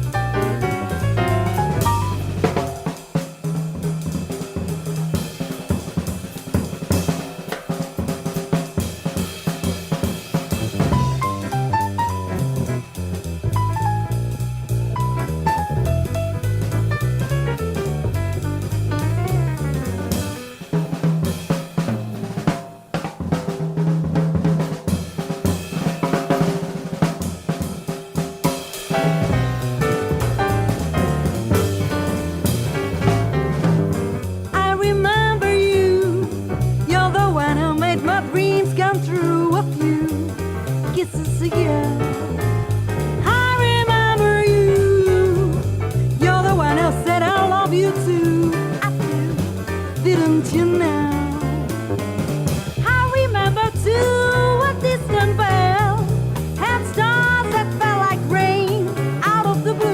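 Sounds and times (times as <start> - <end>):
low bass notes: 0.0 - 2.6, 10.6 - 20.3, 29.0 - 38.0, 39.4 - 58.9
jazz drum kit playing: 0.0 - 59.9
woman singing jazz: 34.5 - 52.0, 52.7 - 59.9.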